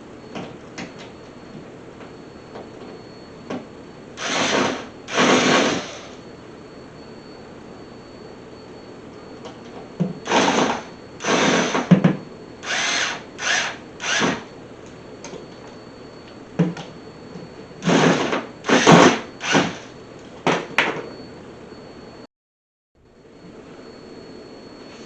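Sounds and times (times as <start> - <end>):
power drill driving screws: 4.2 - 6.2, 10.3 - 11.9, 12.6 - 14.4, 17.8 - 19.9.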